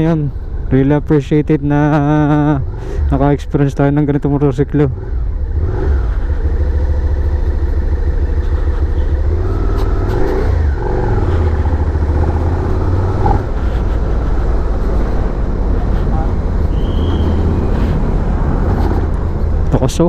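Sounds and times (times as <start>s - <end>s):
motorcycle engine rumbling: 0.0s - 20.0s
wind buffeting microphone: 10.2s - 19.9s.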